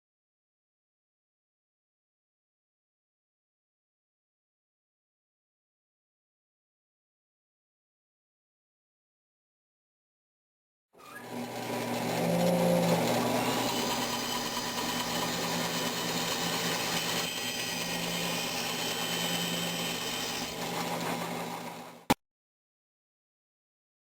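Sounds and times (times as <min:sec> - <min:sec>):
electric power tool motor humming: 0:11.0 - 0:22.2.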